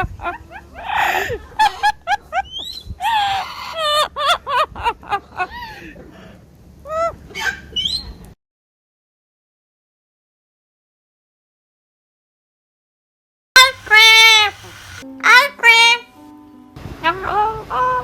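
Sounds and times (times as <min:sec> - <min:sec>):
parrot whistles and chirps: 0:02.4 - 0:03.0, 0:07.4 - 0:08.2, 0:13.6 - 0:15.0
parrot harsh squawks: 0:13.6 - 0:16.0.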